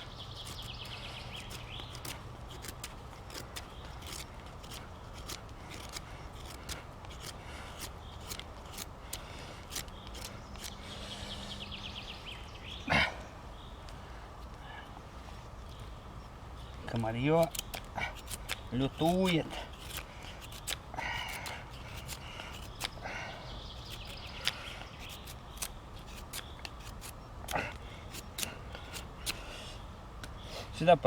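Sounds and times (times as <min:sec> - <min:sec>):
knife scraping wood: 0:00.0 - 0:12.0, 0:17.3 - 0:29.8.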